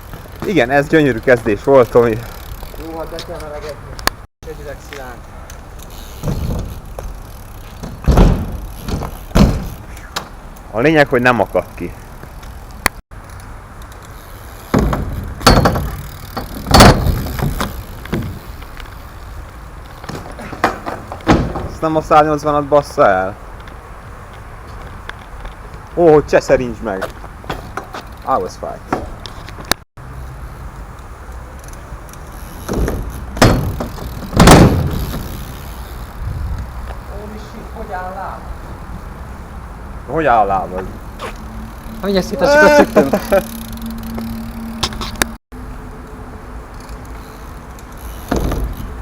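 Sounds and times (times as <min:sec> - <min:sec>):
bike clattering on ground: 0:04.9 - 0:10.4, 0:14.6 - 0:19.0, 0:19.8 - 0:22.1, 0:32.4 - 0:36.2, 0:48.0 - 0:49.0.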